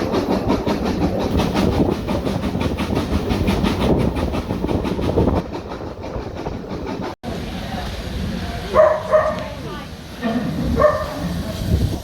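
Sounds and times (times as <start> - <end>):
train wheels knocking: 0.0 - 7.2.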